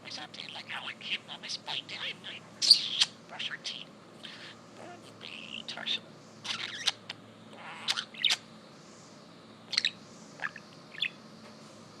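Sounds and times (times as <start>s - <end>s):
budgerigar chirping and clicking: 0.4s - 4.5s, 5.2s - 8.4s, 9.7s - 11.2s.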